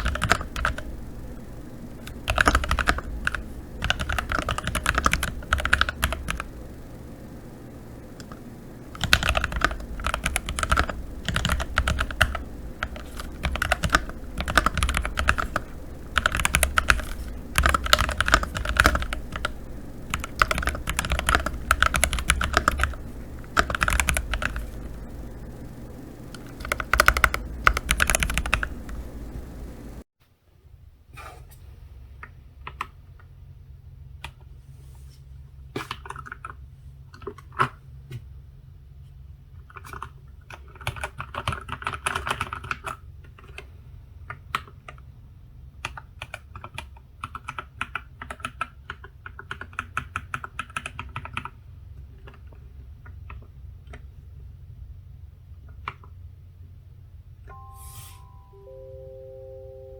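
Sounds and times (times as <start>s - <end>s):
mechanical keyboard typing: 0.0s - 6.6s, 8.1s - 25.3s, 26.3s - 29.2s, 39.7s - 43.7s, 45.8s - 51.5s.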